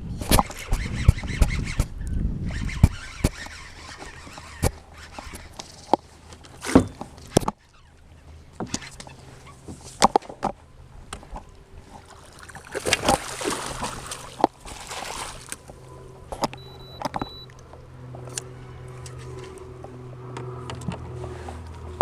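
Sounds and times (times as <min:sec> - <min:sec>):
water splashing: 0:11.9 - 0:15.9
short high electronic beep: 0:16.6 - 0:17.5.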